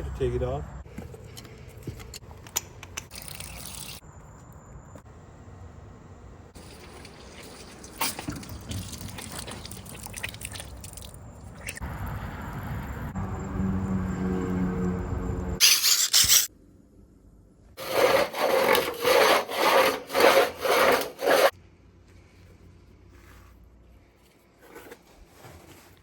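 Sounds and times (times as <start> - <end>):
water trickling through drain: 3.0 - 4.0, 6.6 - 13.0.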